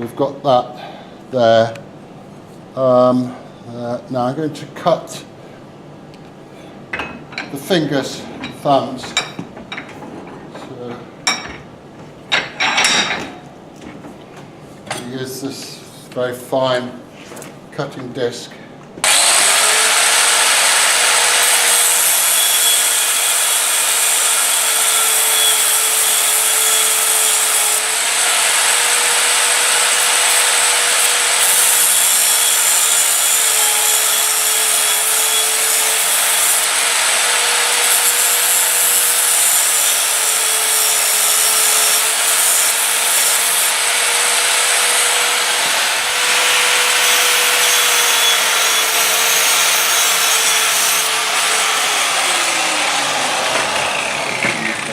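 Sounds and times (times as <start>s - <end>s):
cutting disc grinding steel: 19.0s - 54.9s.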